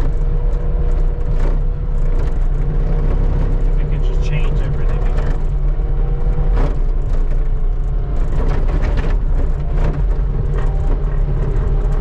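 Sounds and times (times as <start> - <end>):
short knocks and clatters: 6.2 - 12.0.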